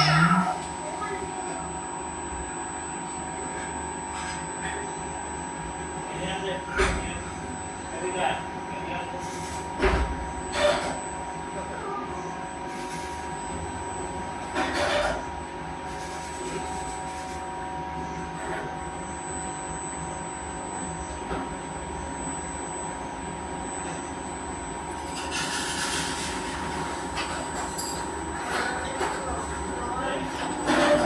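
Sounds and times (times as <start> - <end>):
cnc machine whining: 0.0 - 2.2.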